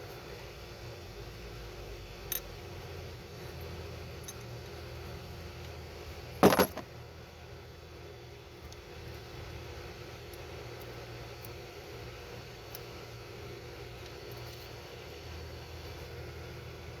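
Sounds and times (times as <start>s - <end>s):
metal parts clinking: 6.4s - 6.8s.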